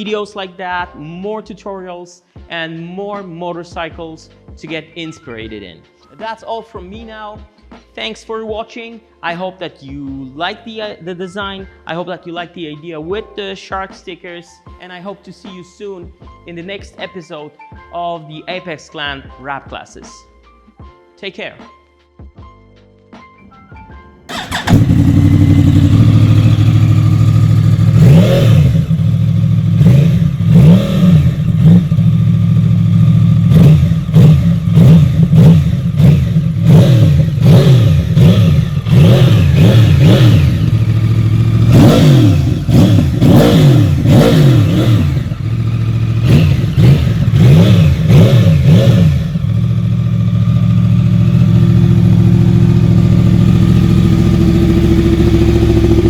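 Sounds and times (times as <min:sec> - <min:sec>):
motorcycle engine idling: 0:24.3 - 0:56.0
motorcycle throttle blips: 0:24.3 - 0:56.0.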